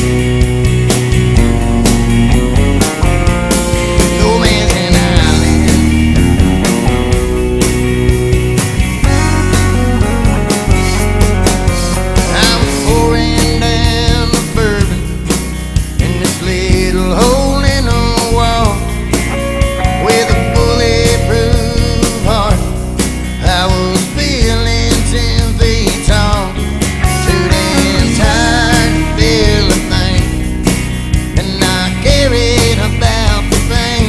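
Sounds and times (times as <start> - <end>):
rock music: 0.0 - 34.0.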